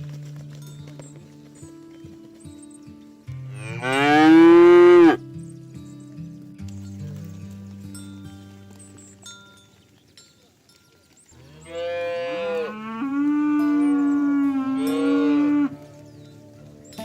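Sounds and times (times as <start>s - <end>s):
cow mooing: 3.5s - 5.2s, 11.3s - 15.8s.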